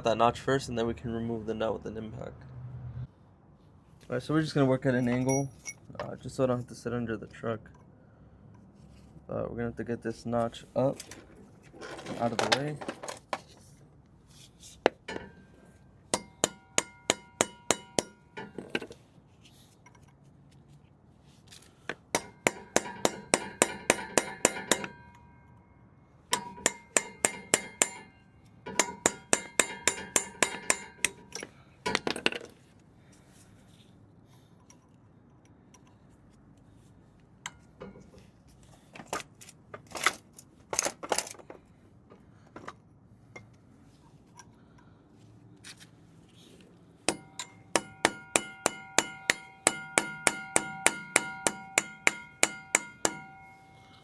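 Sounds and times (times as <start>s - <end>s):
hammer striking steel: 15.1s - 18.8s, 22.1s - 25.6s, 26.3s - 32.5s, 47.1s - 54.0s.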